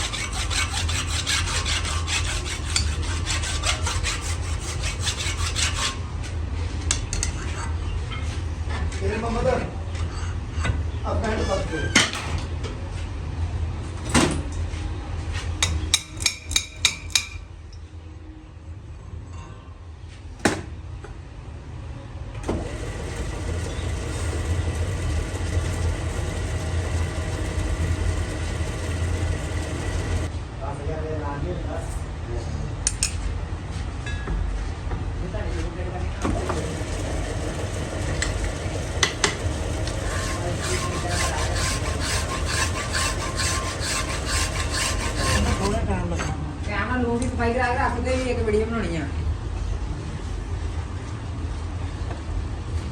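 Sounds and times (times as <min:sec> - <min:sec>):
lathe running: 0:00.0 - 0:02.6, 0:22.4 - 0:30.3, 0:36.3 - 0:45.8
file rasping on metal: 0:00.0 - 0:06.0, 0:22.6 - 0:30.3, 0:36.4 - 0:45.8.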